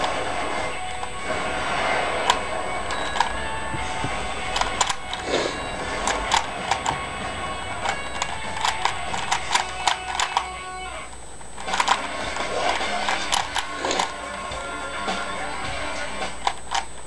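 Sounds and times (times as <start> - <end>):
plastic puzzle cube clicking: 7.8 - 10.6, 11.6 - 12.0, 16.4 - 17.0.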